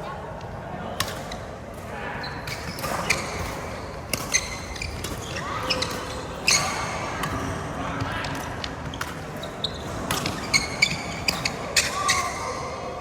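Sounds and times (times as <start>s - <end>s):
shoes squeaking on court floor: 2.2s - 7.5s, 8.2s - 12.8s.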